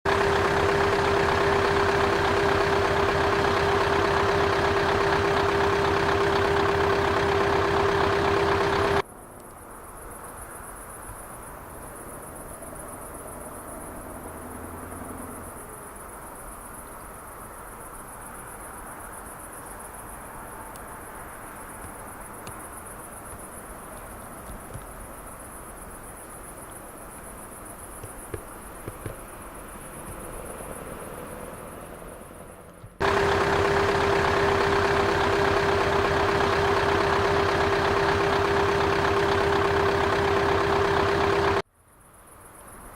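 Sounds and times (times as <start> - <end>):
truck engine running loudly: 0.0 - 9.0, 29.8 - 41.6
crickets chirping: 0.1 - 42.9.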